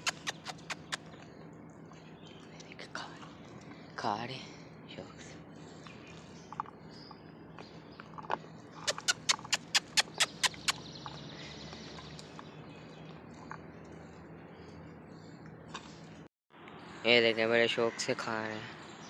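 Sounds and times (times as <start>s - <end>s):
birds pecking on hard surface: 5.4s - 16.3s.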